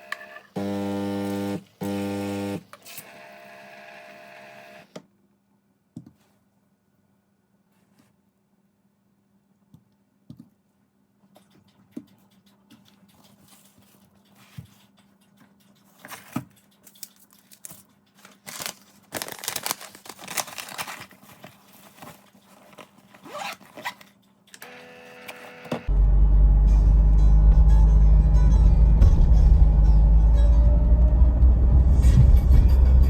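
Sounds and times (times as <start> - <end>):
packaging tearing and crinkling: 16.9 - 24.1.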